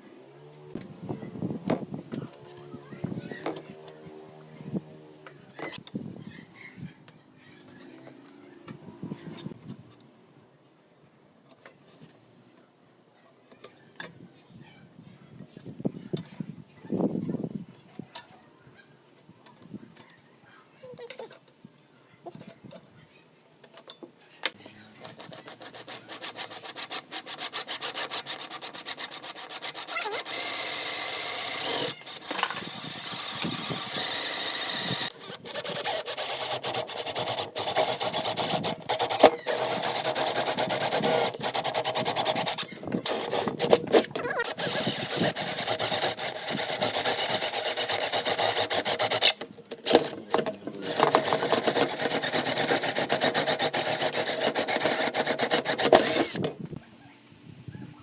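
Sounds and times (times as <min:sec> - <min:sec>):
tool scraping wood: 0:25.0 - 0:56.6.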